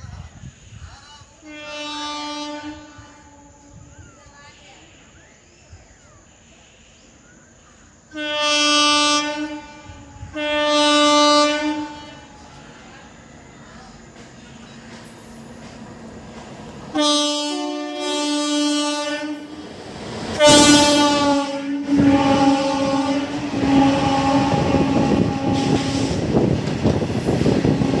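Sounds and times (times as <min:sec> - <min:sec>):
train rumbling and clattering: 0:00.0 - 0:01.5, 0:09.7 - 0:28.0
train horn blasts: 0:01.4 - 0:03.9, 0:08.1 - 0:12.8, 0:16.9 - 0:19.6, 0:20.3 - 0:28.0.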